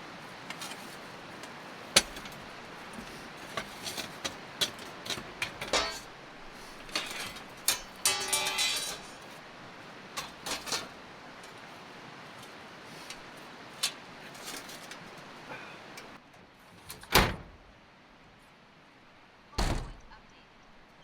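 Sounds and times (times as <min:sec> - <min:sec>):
vehicle door thud: 0:19.6 - 0:20.0.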